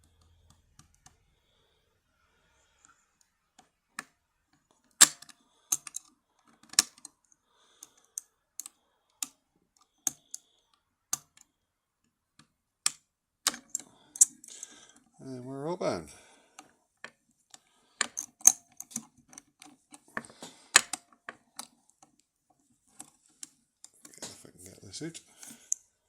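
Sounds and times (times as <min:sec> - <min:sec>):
lock pick metallic clicks: 0:05.0 - 0:07.1, 0:12.8 - 0:14.7, 0:17.5 - 0:21.7.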